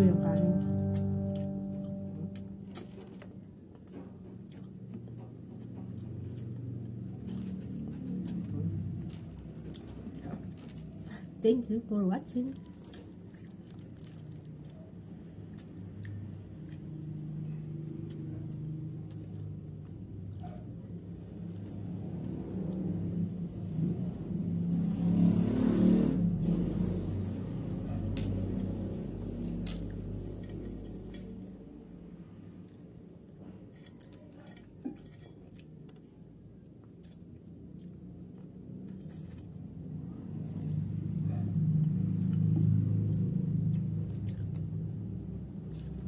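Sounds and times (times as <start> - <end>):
low steady hum: 0.0 - 25.0
chewing and food handling clicks: 2.4 - 11.1, 12.5 - 23.1, 32.4 - 46.0
low vehicle rumble: 15.2 - 33.7.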